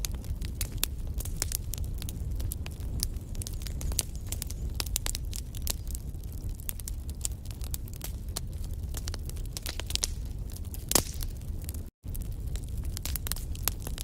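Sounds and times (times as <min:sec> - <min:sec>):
logs crackling in fireplace: 0:00.0 - 0:14.0.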